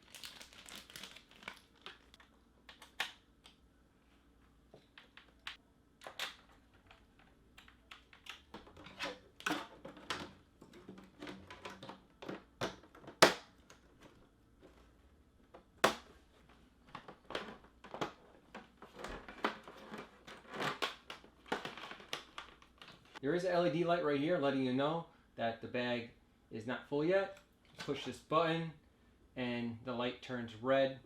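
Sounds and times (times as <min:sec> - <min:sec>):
sharp plastic snaps: 0:01.8 - 0:03.6, 0:04.8 - 0:08.7, 0:12.3 - 0:13.8, 0:15.6 - 0:16.2
plastic parts clicking and tapping: 0:04.8 - 0:14.8.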